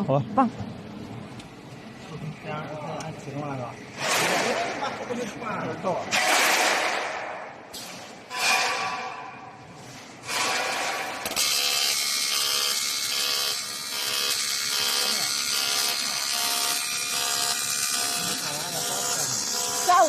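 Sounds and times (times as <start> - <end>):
welding arc buzzing: 3.7 - 5.1, 10.2 - 20.0
welding arc hiss: 10.3 - 20.0.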